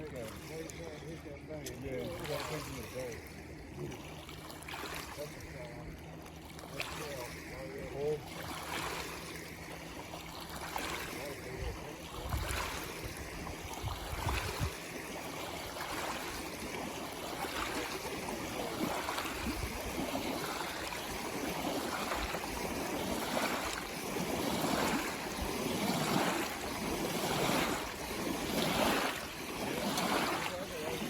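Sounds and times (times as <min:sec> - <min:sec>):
river water rushing and splashing: 0:06.4 - 0:31.0.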